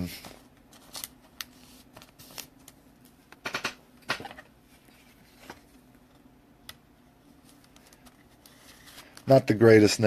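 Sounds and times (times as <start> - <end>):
trading cards rustling: 0.2 - 2.8.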